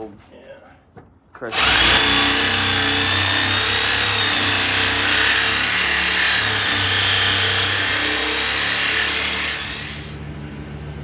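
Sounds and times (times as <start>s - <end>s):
power tool rasping with high whine: 1.5s - 10.2s.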